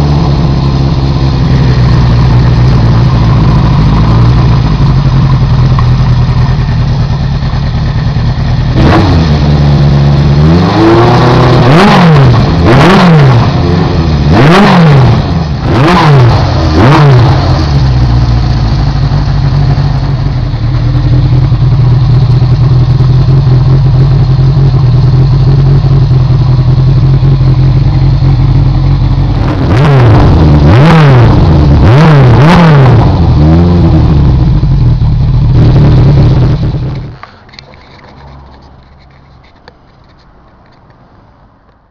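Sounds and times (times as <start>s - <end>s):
motorcycle engine idling and revving: 0.0s - 41.9s.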